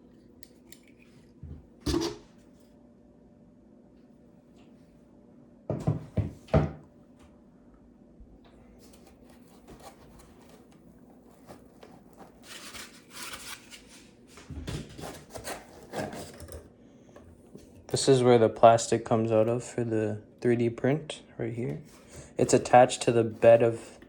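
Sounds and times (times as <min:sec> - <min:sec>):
packaging rustling scrapes: 0:08.8 - 0:16.6.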